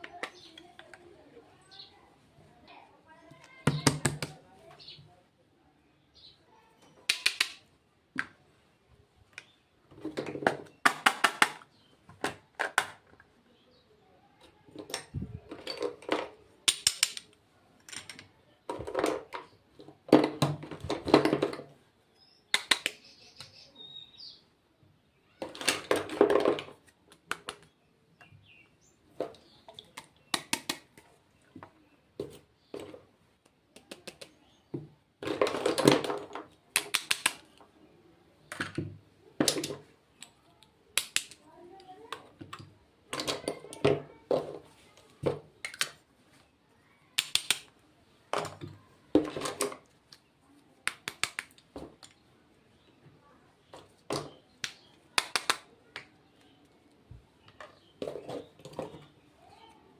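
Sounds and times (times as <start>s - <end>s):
plastic clicking and tapping: 0.0s - 1.1s, 7.0s - 7.6s, 32.8s - 37.7s, 50.8s - 52.2s.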